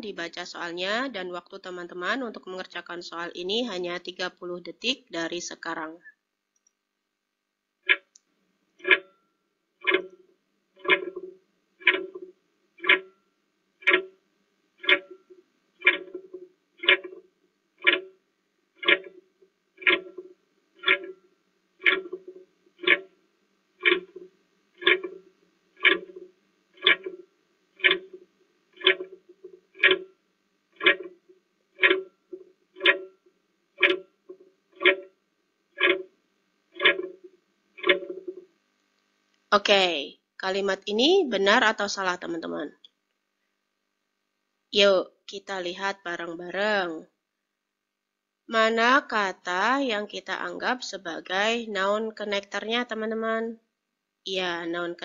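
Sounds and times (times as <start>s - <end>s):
clock ticking: 7.8s - 8.2s, 8.8s - 9.2s, 9.8s - 13.2s, 13.8s - 14.2s, 14.8s - 18.2s, 18.8s - 19.2s, 19.8s - 23.2s, 23.8s - 30.2s, 30.8s - 35.2s, 35.8s - 36.1s, 36.7s - 38.5s.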